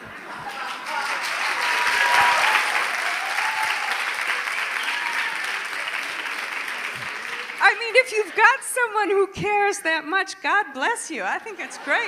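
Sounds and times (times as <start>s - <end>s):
audience applauding: 0.0s - 8.6s
faint cheers: 0.5s - 6.5s.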